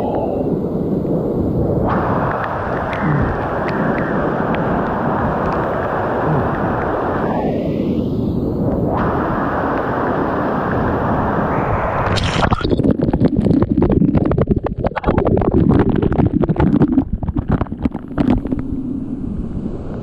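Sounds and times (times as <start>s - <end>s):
wind buffeting microphone: 0.0s - 12.2s
steady rushing noise: 0.0s - 20.0s.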